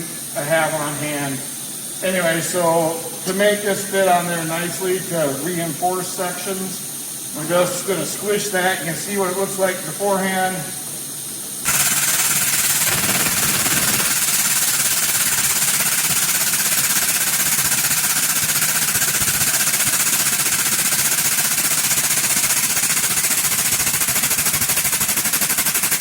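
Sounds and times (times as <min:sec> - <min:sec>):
powered press pump pulsing: 0:11.7 - 0:26.0.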